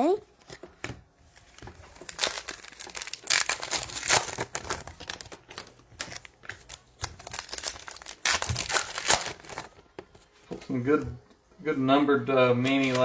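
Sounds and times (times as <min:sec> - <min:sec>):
foil wrappers crinkling and tearing: 0:00.0 - 0:10.8, 0:12.3 - 0:13.0.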